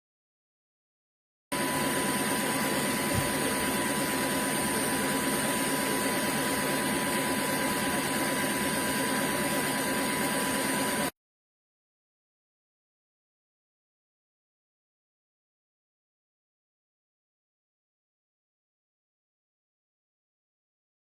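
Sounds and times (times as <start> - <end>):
vacuum motor whining: 1.6 - 11.1.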